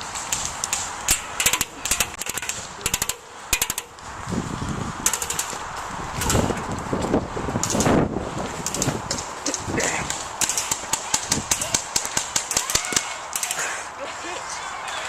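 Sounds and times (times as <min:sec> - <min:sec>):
airsoft guns firing bursts: 0:10.4 - 0:13.6.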